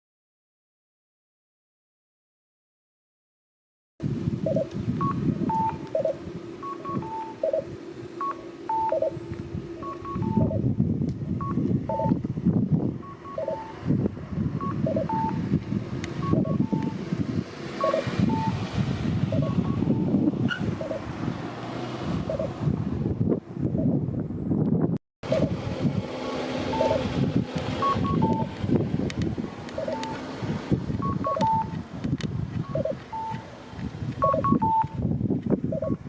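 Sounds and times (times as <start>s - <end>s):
loud low rumble: 4.0s - 32.9s
electronic cuckoo crossing signal: 4.4s - 10.6s, 11.4s - 12.2s, 13.0s - 13.8s, 14.6s - 15.4s, 16.2s - 17.0s, 17.8s - 18.6s, 19.3s - 21.0s, 26.7s - 27.1s, 27.8s - 28.5s, 29.8s - 30.2s, 31.0s - 31.8s, 32.6s - 33.5s, 34.2s - 35.0s, 35.7s - 36.0s.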